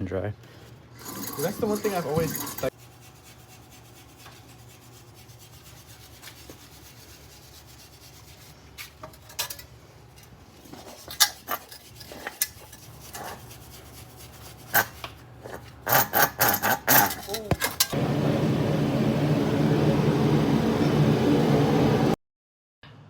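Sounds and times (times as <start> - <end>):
rubbing and scraping: 0.6 - 9.0, 10.2 - 17.5.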